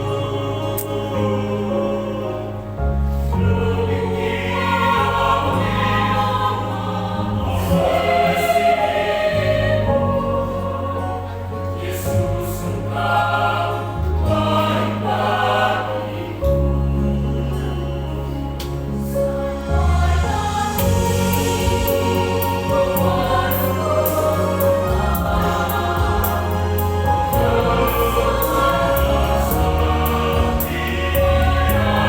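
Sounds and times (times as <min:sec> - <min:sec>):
choir singing a hymn: 0:00.0 - 0:32.0
held low bass notes: 0:16.4 - 0:32.0.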